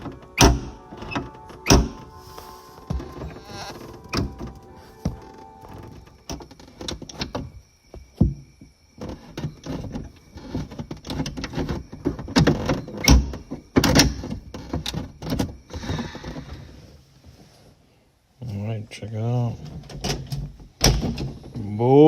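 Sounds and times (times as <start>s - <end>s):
door latch clicking and clunking: 0.0s - 2.1s.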